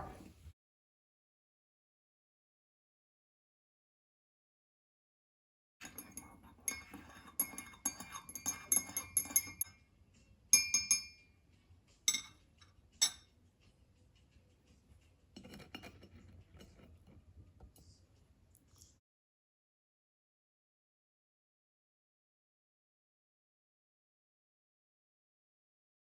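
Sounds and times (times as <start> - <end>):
glass tableware clinking: 5.8 - 9.8, 10.6 - 11.3, 12.1 - 13.3.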